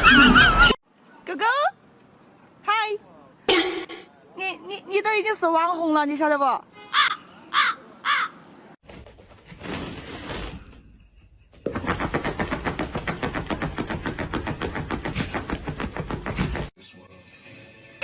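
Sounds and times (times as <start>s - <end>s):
harsh caw-like animal calls: 6.9s - 8.4s.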